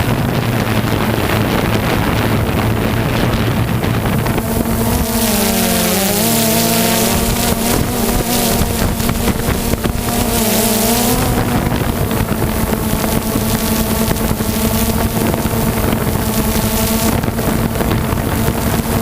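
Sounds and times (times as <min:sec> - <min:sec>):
aircraft engine droning: 0:00.0 - 0:19.0
wind on microphone: 0:00.0 - 0:19.0.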